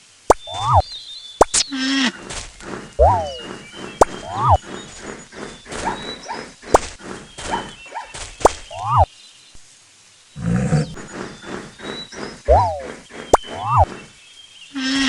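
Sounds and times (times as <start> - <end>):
faint high chirps: 0.3 - 9.6.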